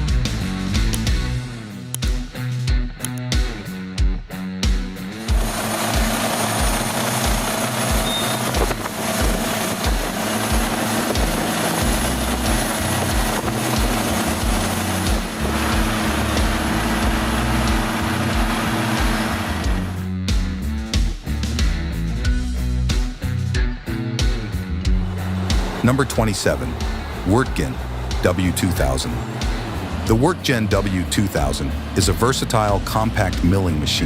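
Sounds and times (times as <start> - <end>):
diesel trencher engine running: 5.1 - 20.0, 24.9 - 34.0.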